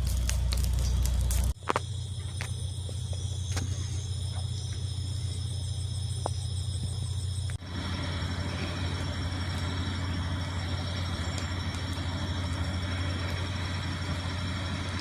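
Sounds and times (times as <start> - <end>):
wood fire crackling and popping: 0.0 - 5.4, 6.0 - 15.0
low hum: 0.0 - 15.0
shrill insect chorus: 0.0 - 15.0.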